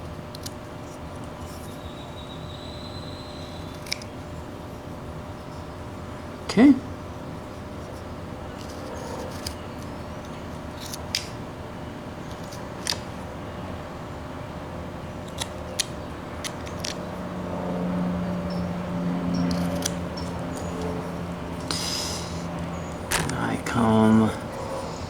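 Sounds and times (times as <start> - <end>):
knife slicing wood clicks: 0.3 - 0.6, 3.6 - 4.2, 8.6 - 11.4, 12.3 - 13.1, 15.2 - 17.0, 19.4 - 21.0, 23.1 - 23.4.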